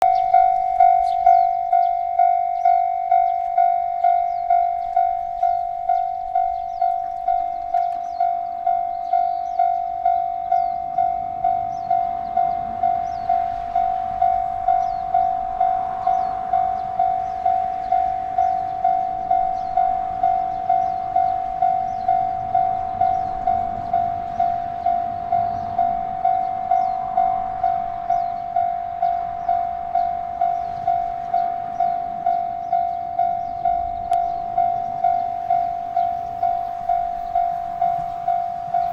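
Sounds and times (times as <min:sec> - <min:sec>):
railway crossing bell ringing: 0:00.0 - 0:38.9.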